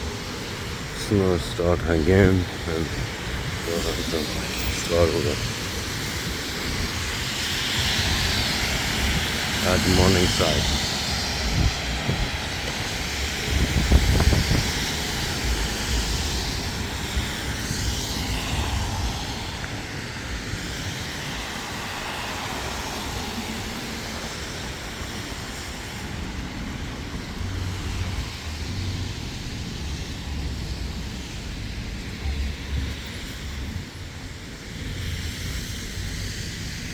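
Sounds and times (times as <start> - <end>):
traffic rushing: 0.0 - 36.9
low buffeting rumbles: 0.7 - 19.7.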